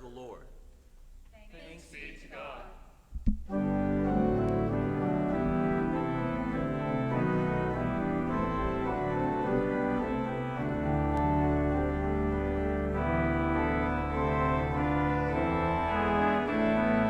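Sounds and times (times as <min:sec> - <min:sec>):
organ knock: 0:03.2 - 0:17.0
church organ playing chords: 0:03.5 - 0:17.0.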